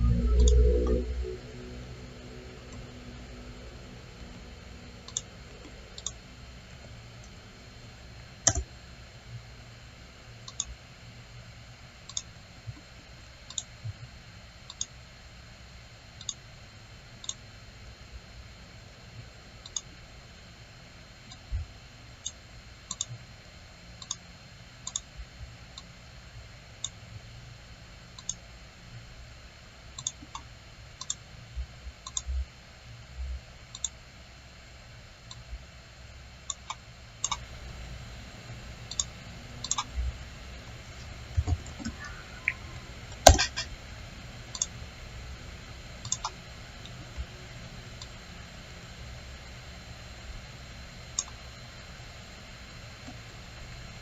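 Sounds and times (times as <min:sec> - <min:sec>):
low steady hum: 0:00.0 - 0:54.0
computer mouse clicking: 0:05.1 - 0:05.3, 0:06.0 - 0:06.2, 0:08.5 - 0:08.7, 0:10.4 - 0:10.7, 0:12.1 - 0:12.3, 0:13.5 - 0:13.7, 0:14.7 - 0:15.0, 0:16.2 - 0:16.4, 0:19.6 - 0:19.9, 0:22.2 - 0:23.2, 0:24.0 - 0:24.2, 0:24.9 - 0:25.1, 0:28.2 - 0:28.4, 0:30.0 - 0:31.2, 0:32.0 - 0:32.3, 0:33.7 - 0:34.0, 0:36.5 - 0:37.5, 0:38.9 - 0:39.9, 0:44.5 - 0:44.8, 0:46.0 - 0:47.0, 0:51.2 - 0:51.4.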